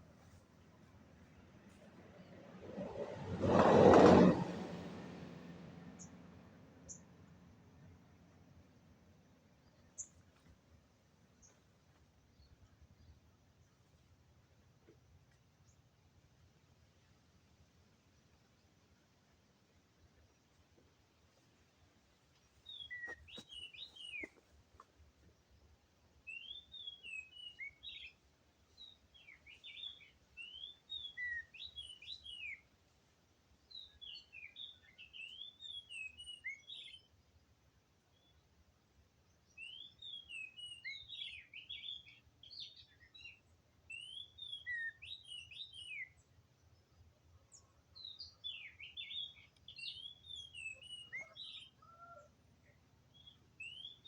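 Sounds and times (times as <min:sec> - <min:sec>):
bird singing whistled notes: 0:22.7 - 0:24.3, 0:26.3 - 0:28.2, 0:28.8 - 0:32.6, 0:33.7 - 0:37.1, 0:39.4 - 0:46.2, 0:47.5 - 0:52.3, 0:53.1 - 0:54.0.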